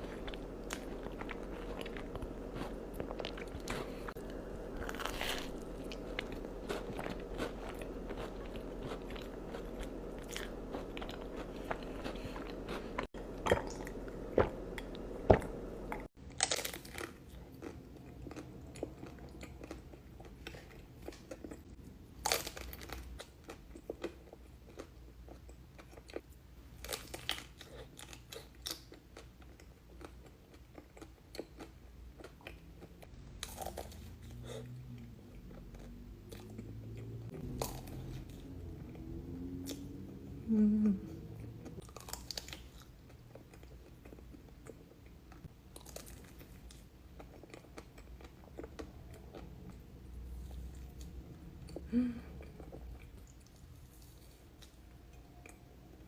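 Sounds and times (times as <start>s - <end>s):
chewing: 0.0s - 40.0s, 41.4s - 56.0s
crunchy bites: 0.1s - 15.5s, 33.3s - 34.4s.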